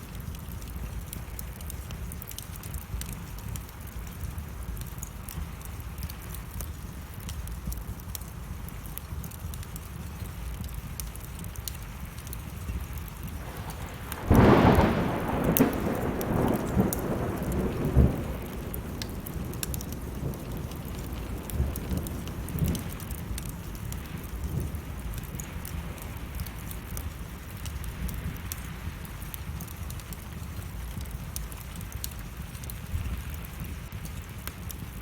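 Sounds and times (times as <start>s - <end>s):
steady rain: 0.0s - 35.0s
wood fire crackling: 0.0s - 35.0s
rolling thunderclap: 13.4s - 28.6s.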